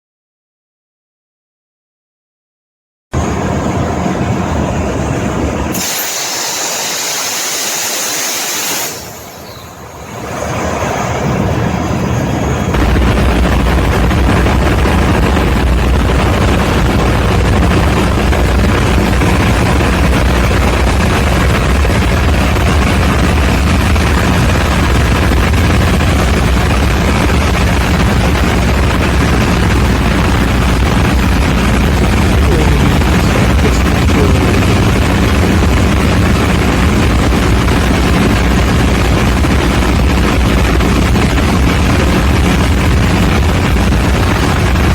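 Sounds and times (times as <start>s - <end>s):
diesel generator engine running: 3.2s - 44.9s
loud hiss: 5.7s - 9.8s.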